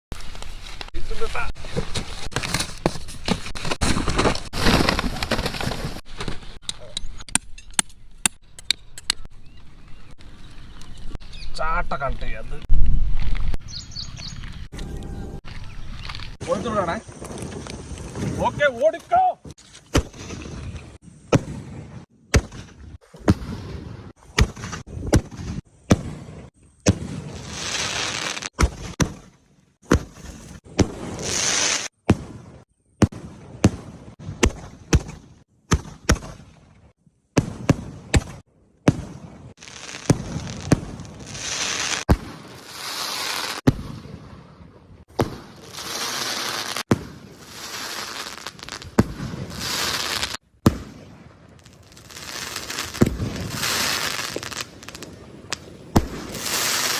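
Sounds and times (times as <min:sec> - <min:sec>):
firework hissing: 0:39.6 - 0:43.6, 0:45.5 - 0:50.4, 0:51.7 - 0:55.1, 0:56.0 - 0:56.9.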